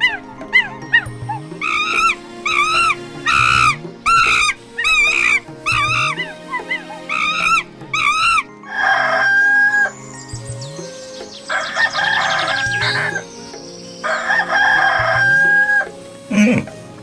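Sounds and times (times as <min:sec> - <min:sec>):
rooster crowing: 0:01.6 - 0:09.9, 0:11.5 - 0:13.2, 0:14.1 - 0:15.8.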